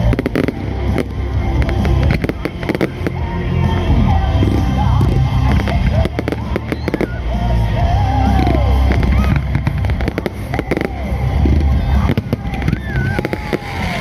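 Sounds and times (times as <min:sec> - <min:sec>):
firework bangs and crackles: 0:00.0 - 0:14.0
firework whistling: 0:00.0 - 0:14.0
steady low rumble: 0:00.0 - 0:14.0.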